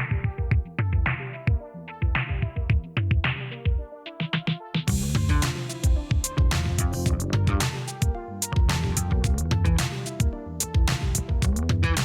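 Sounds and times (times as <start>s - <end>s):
drum-machine beat: 0.0s - 12.0s
synthesizer chords: 0.0s - 12.0s.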